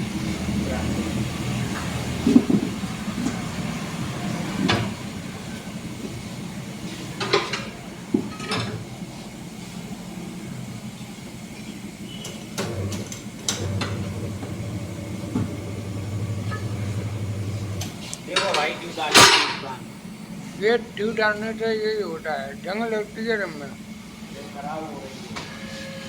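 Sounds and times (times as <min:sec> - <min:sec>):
steady low hum: 0:12.9 - 0:25.2.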